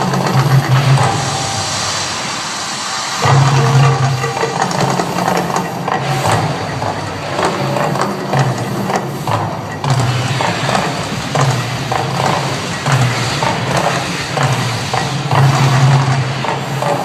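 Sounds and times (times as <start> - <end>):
crackling rush of gas fire: 0.0 - 17.0.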